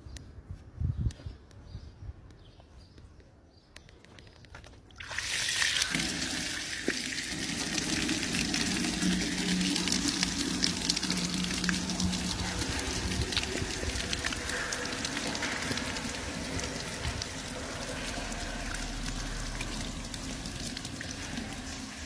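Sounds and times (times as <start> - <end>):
running water: 5.0 - 22.0
low motor hum: 7.4 - 22.0.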